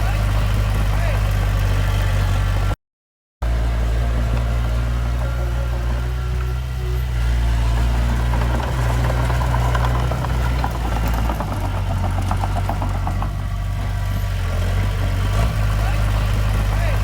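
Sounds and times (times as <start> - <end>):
heavy diesel engine running: 0.0 - 2.8, 3.4 - 17.0
light metallic clatter: 4.2 - 14.9.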